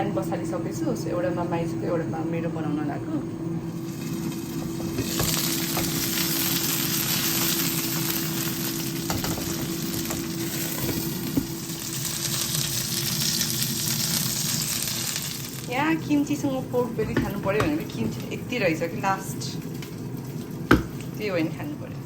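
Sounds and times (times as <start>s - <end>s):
food sizzling in a frying pan: 3.7s - 21.9s.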